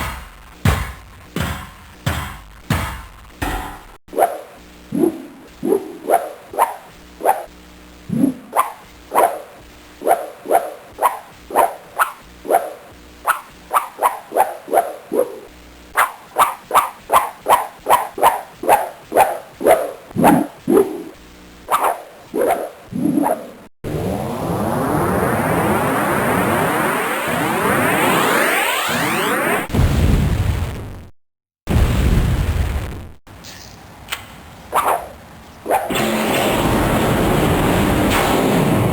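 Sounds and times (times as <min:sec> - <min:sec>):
dog barking: 0:04.2 - 0:07.5, 0:08.2 - 0:21.1, 0:34.7 - 0:35.9.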